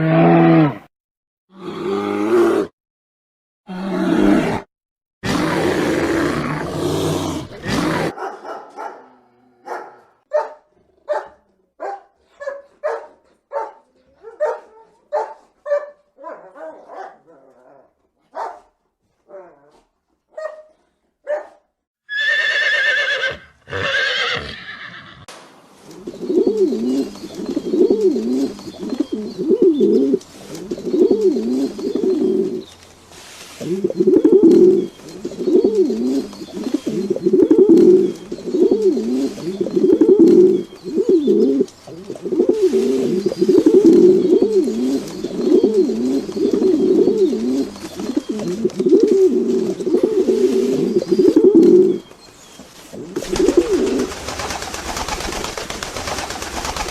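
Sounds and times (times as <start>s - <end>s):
dog barking: 8.0s - 19.6s, 20.3s - 21.7s
pigeons cooing: 25.9s - 32.7s, 33.5s - 56.9s.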